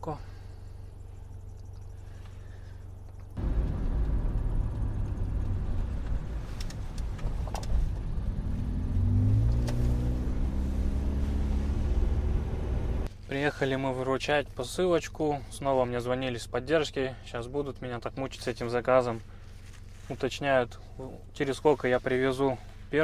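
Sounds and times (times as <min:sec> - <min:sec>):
car engine and road rumble: 0:00.0 - 0:23.0
low steady hum: 0:00.0 - 0:23.0.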